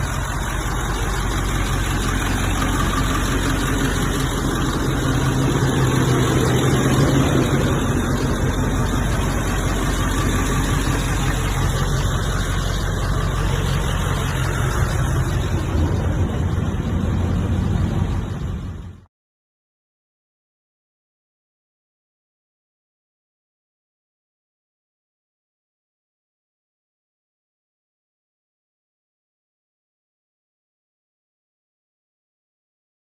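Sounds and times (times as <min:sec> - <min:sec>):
pickup truck engine idling: 0:00.0 - 0:19.1.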